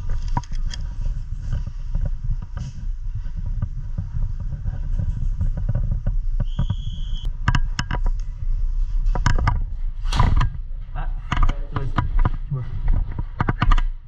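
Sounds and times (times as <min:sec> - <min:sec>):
steady low rumble: 0:00.0 - 0:14.0
sharp clicks and knocks: 0:07.4 - 0:08.3, 0:11.3 - 0:14.0.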